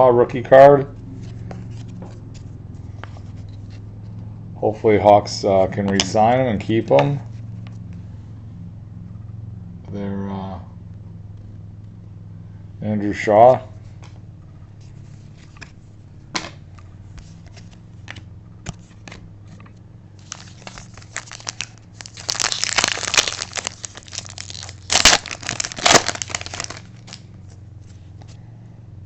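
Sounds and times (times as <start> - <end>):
low steady hum: 0.0 - 29.0
plastic packaging crinkling: 20.2 - 27.3.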